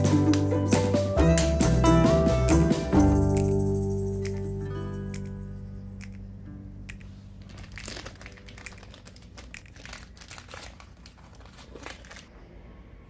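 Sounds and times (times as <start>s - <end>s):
crinkling rustles of small objects: 7.0s - 12.3s.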